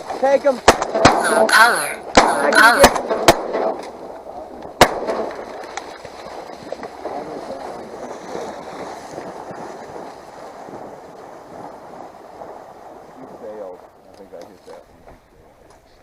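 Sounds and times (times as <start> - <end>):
shotgun shot: 0.7 - 3.8, 4.8 - 5.3.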